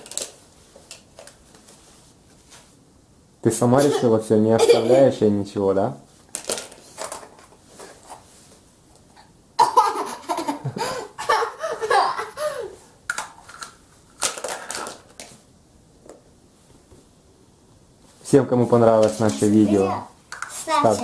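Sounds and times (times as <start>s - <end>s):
laughter: 3.8s - 5.1s, 9.6s - 12.4s.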